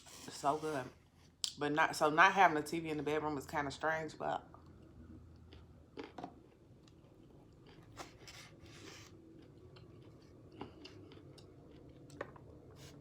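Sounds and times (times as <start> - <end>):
person chewing food: 4.6 - 13.0.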